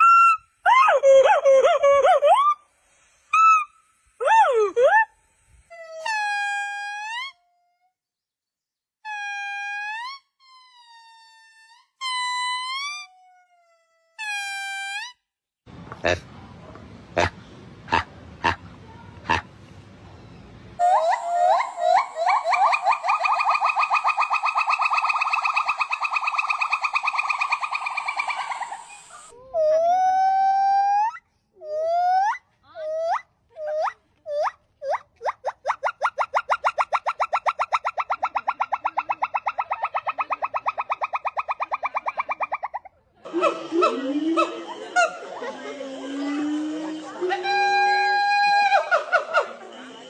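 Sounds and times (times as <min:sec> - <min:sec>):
monkey calling: 0:00.0 - 0:02.6, 0:20.8 - 0:50.0.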